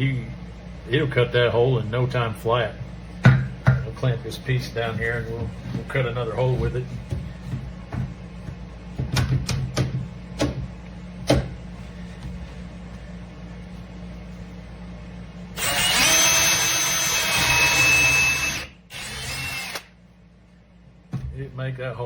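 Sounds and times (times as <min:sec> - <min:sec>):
power drill boring through wood: 0:15.6 - 0:19.9.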